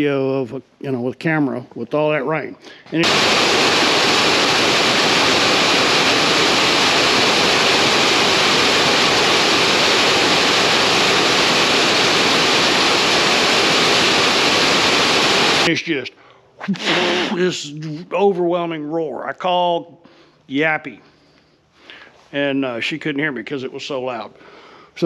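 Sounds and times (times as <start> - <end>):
heavy rain on a metal roof: 3.0 - 15.7.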